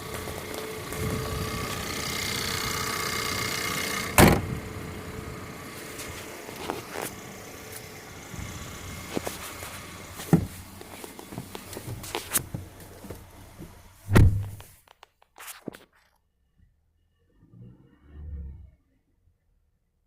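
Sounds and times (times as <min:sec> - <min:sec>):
engine idling: 0:00.0 - 0:14.6
fuel pump buzz and rattle: 0:00.0 - 0:14.6
loud thump: 0:04.2 - 0:04.6, 0:14.1 - 0:14.7.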